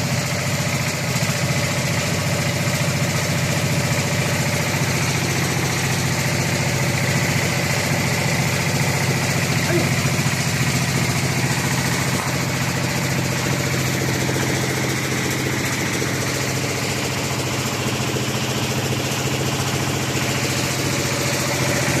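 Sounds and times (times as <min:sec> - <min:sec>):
machinery engine humming: 0:00.0 - 0:22.0.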